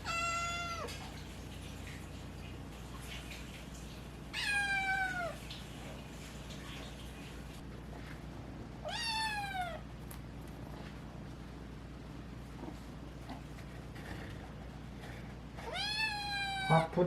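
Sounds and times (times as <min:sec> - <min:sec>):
young cat meowing: 0:00.0 - 0:01.0, 0:04.3 - 0:05.4, 0:08.8 - 0:09.8, 0:15.6 - 0:17.0.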